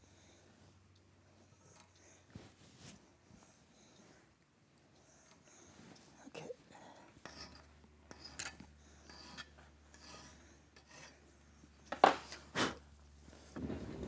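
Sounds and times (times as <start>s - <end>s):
file scraping on metal: 7.3s - 11.2s.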